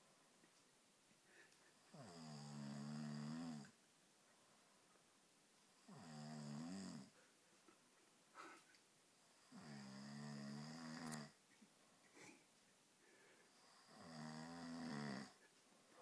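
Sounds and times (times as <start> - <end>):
faint breaths: 0.0 - 2.6, 7.0 - 10.2, 11.0 - 14.0, 15.2 - 16.0
man snoring: 1.9 - 3.7, 5.8 - 7.1, 9.4 - 11.4, 13.6 - 15.4.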